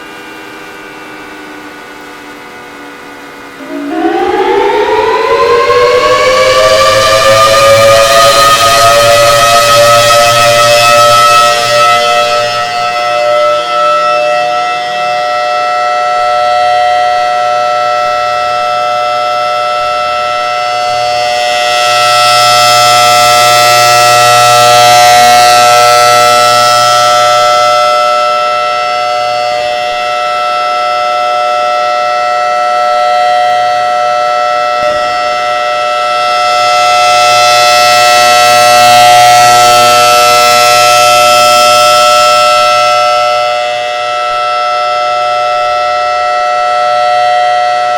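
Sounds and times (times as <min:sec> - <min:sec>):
siren steady alert tone: 0:03.4 - 0:47.9.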